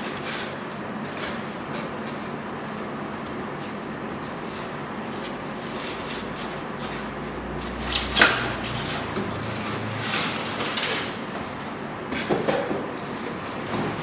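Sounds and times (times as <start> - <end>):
scraping and rustling: 3.6 - 14.0.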